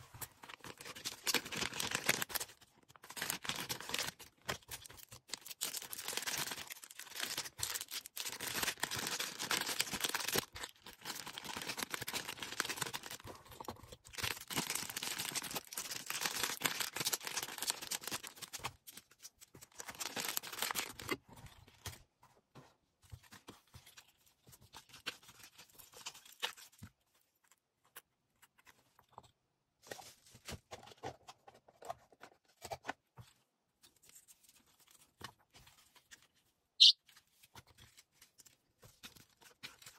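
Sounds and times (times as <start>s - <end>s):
packaging crackling and rustling: 0.0s - 22.0s.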